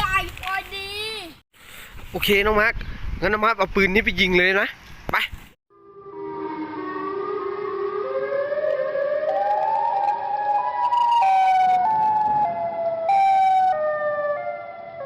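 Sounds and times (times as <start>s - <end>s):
multi-tone siren wail: 5.7s - 15.0s.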